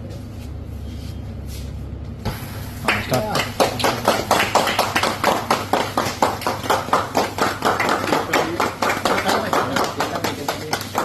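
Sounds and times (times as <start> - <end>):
people clapping: 2.8 - 11.0.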